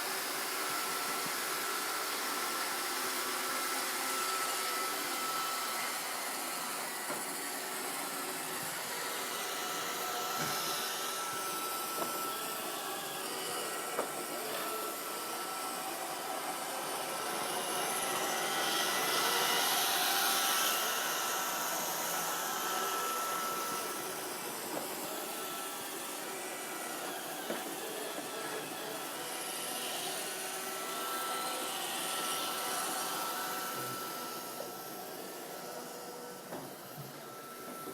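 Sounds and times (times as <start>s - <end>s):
robot vacuum whirring: 0.0s - 37.9s.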